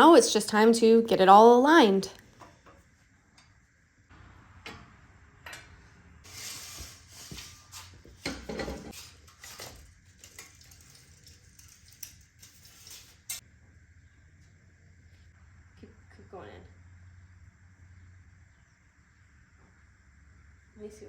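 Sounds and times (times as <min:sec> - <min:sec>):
scraping rustles: 0:06.3 - 0:13.4.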